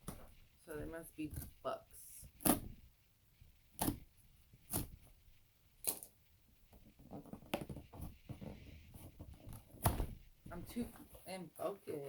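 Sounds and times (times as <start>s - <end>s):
cardboard box rustling: 7.1s - 11.4s.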